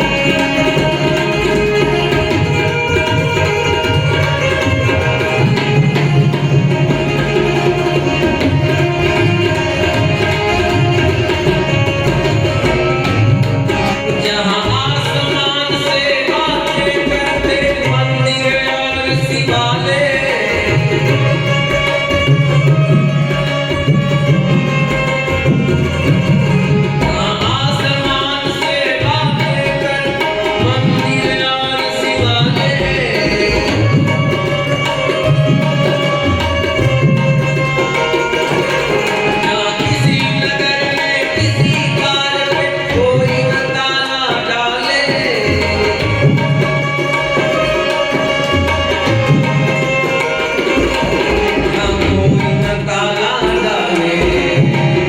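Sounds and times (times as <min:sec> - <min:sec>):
tabla playing rhythm: 0:00.0 - 0:55.0.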